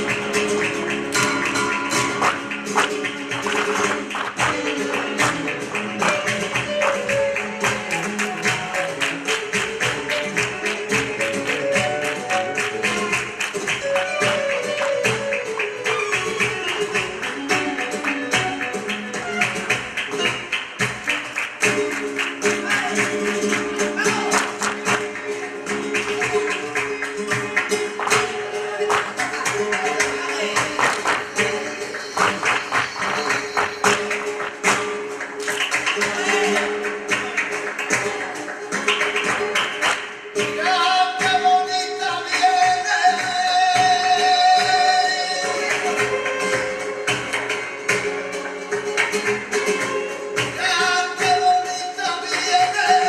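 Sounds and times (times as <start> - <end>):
sharp percussive strikes: 0.0 - 41.6
flamenco music: 0.0 - 53.0.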